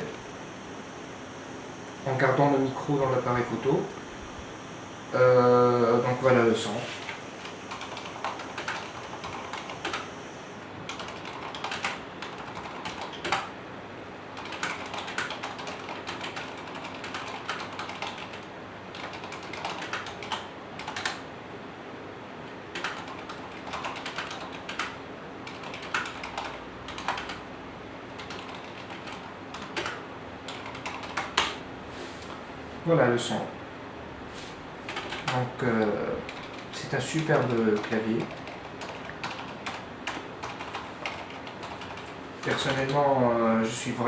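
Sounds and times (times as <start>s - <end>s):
keyboard typing: 7.1s - 10.1s, 10.9s - 13.5s, 14.4s - 21.2s, 22.7s - 27.4s, 28.1s - 31.6s, 34.9s - 43.1s.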